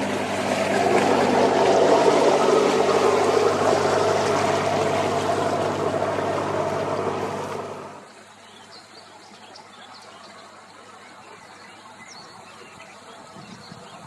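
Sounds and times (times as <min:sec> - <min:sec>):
motor boat engine running: 0:00.0 - 0:08.0
water rushing and churning: 0:00.0 - 0:08.4.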